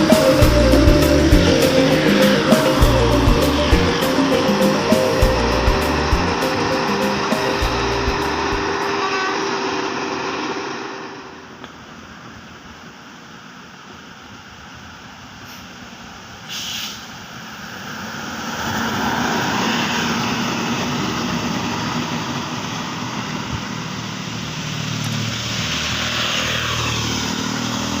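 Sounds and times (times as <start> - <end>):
low engine hum: 0.0 - 9.0
buses driving past: 0.0 - 28.0
brief hiss: 15.4 - 17.3.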